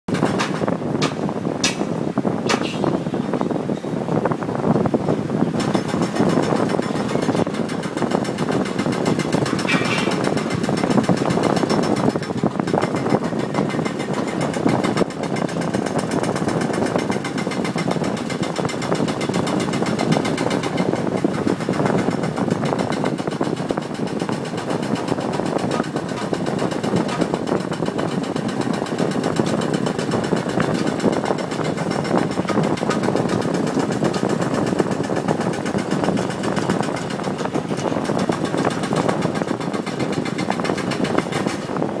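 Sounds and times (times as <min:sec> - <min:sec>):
demolition breaker hammering: 0:05.5 - 0:42.0.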